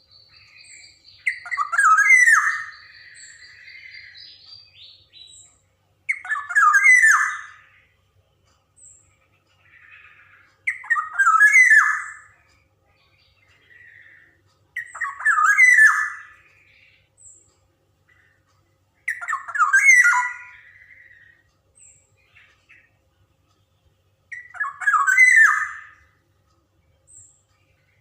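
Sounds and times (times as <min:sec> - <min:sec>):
bird singing whistled notes: 0:00.0 - 0:07.9, 0:08.8 - 0:17.5, 0:19.0 - 0:22.9, 0:24.3 - 0:26.2.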